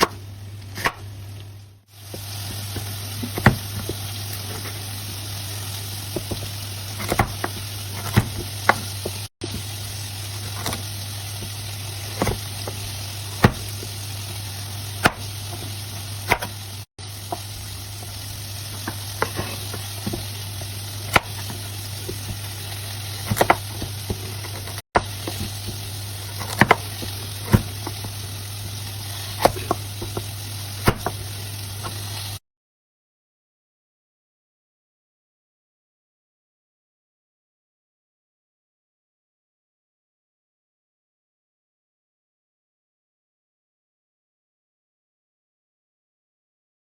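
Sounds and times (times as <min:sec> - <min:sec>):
vegetables sizzling in a pan: 0:00.2 - 0:32.4
spatula scraping a pan: 0:02.2 - 0:09.3, 0:17.2 - 0:32.4.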